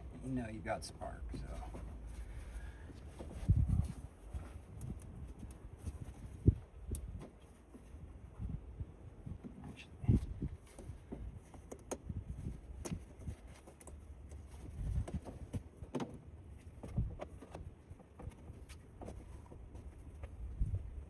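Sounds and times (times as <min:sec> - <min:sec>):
hands working in engine bay: 0:01.2 - 0:08.5, 0:09.2 - 0:20.4.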